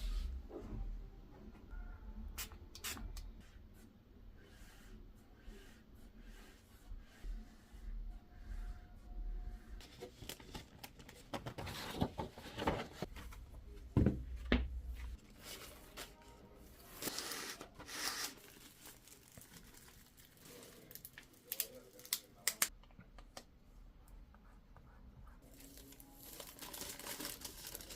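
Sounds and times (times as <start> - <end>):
packaging tearing and crinkling: 25.5 - 27.9.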